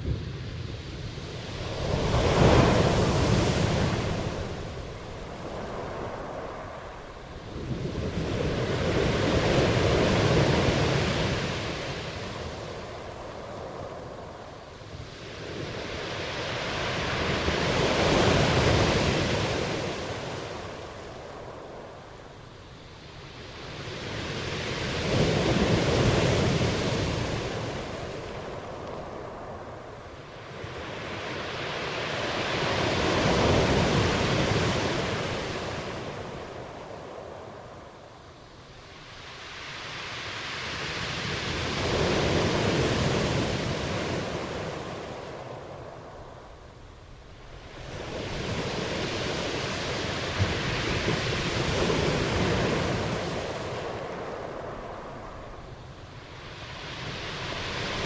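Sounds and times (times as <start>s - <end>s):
waves breaking: 1.3s - 22.4s, 38.8s - 58.0s.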